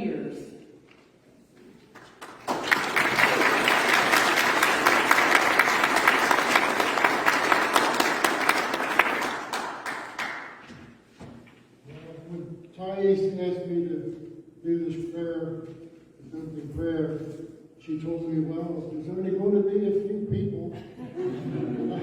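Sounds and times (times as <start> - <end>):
audience applauding: 1.9 - 10.7.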